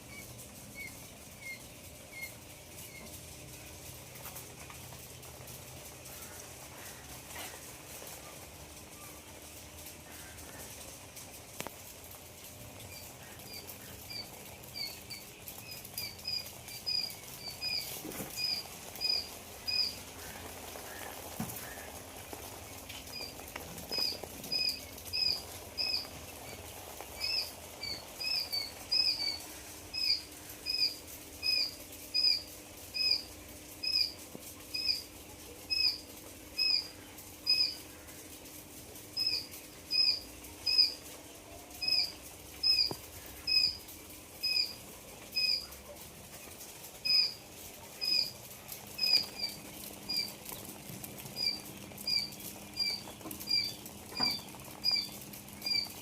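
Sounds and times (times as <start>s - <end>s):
quail chirping: 0.1s - 3.1s, 12.8s - 35.1s, 35.7s - 36.0s, 36.6s - 37.8s, 39.2s - 41.1s, 41.8s - 43.8s, 44.4s - 45.8s, 47.0s - 56.0s.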